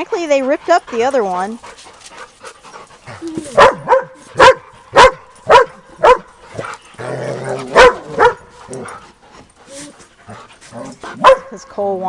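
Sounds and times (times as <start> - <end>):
dog barking: 3.6 - 6.3, 7.7 - 8.5, 11.2 - 11.6.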